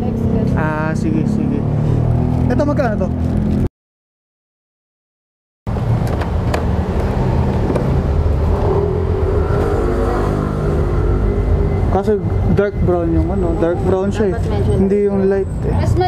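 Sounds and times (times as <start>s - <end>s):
low engine drone: 5.7s - 16.0s.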